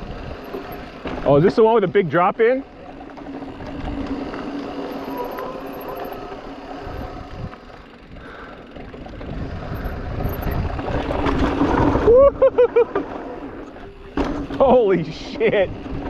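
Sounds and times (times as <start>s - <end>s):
electric motor hum: 0.0s - 1.2s, 2.6s - 11.8s
tyre and wind rumble: 0.0s - 16.0s.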